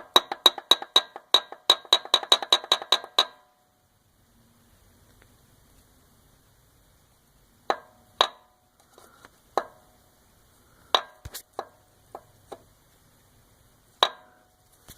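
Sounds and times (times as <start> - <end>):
sharp metal clacks: 0.0 - 3.5.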